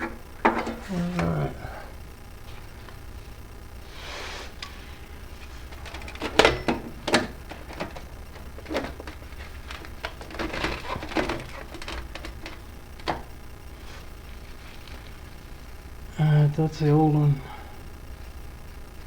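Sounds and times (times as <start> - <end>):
hand tools clicking and knocking: 0.0 - 1.3, 5.8 - 13.3.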